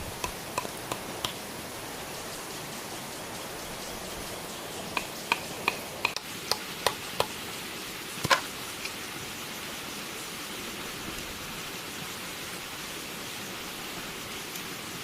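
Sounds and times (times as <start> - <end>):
steady rushing hiss: 0.0 - 15.0
bamboo knocking: 0.2 - 1.4, 4.9 - 7.4, 8.2 - 8.5.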